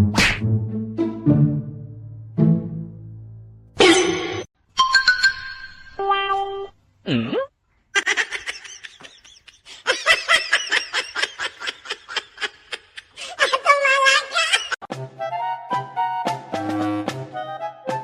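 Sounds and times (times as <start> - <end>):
music: 0.0 - 3.8, 14.9 - 18.0
quick swooping sound: 0.1 - 0.4
pulsing laughter: 8.0 - 14.8.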